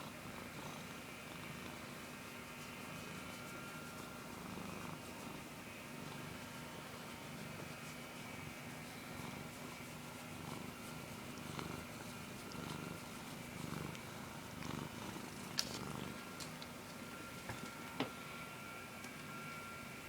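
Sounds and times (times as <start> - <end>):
cat snoring: 0.0 - 2.0, 4.3 - 7.7, 8.8 - 16.3.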